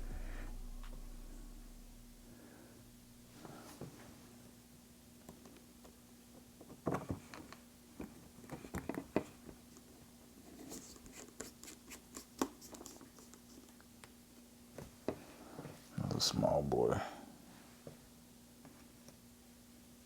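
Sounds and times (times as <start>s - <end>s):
faint steady hum: 0.0s - 8.4s, 12.4s - 20.0s.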